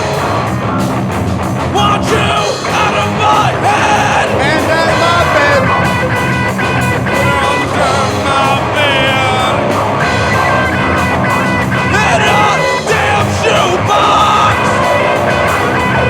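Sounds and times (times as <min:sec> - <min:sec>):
distorted rock band playing: 0:00.0 - 0:16.0
high guitar slide: 0:00.0 - 0:16.0.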